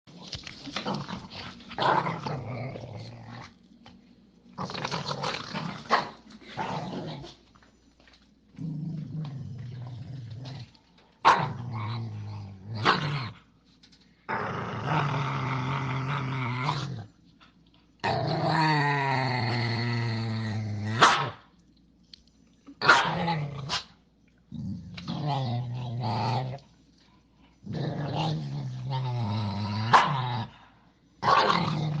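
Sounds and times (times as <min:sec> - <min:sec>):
dog growling: 0:00.7 - 0:03.6, 0:14.3 - 0:17.1, 0:18.0 - 0:21.0, 0:24.5 - 0:26.7, 0:27.6 - 0:32.0.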